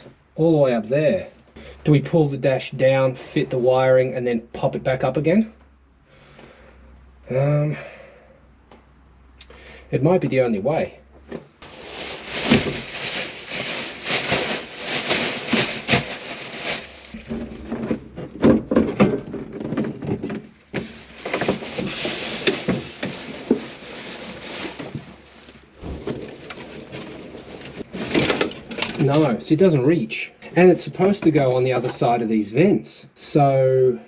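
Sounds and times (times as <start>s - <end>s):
plastic rustling and scraping: 11.6s - 29.1s.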